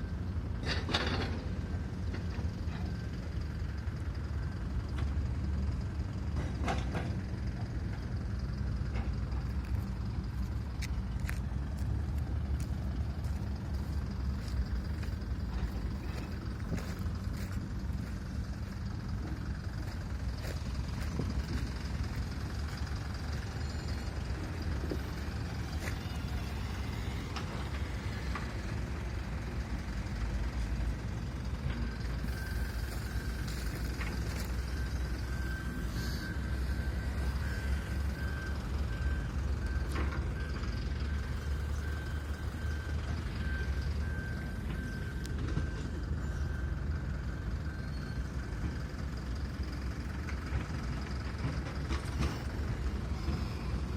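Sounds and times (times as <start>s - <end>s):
diesel machinery engine drone: 0.0s - 53.9s.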